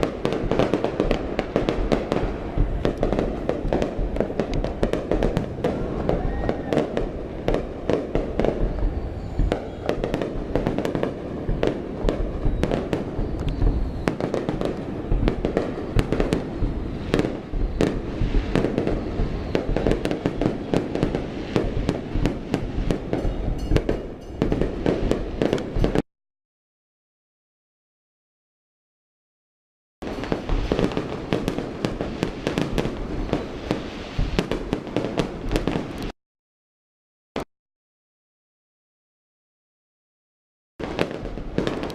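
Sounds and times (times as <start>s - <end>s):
fireworks bangs and crackles: 0.0s - 26.0s, 30.0s - 36.2s, 40.8s - 41.9s.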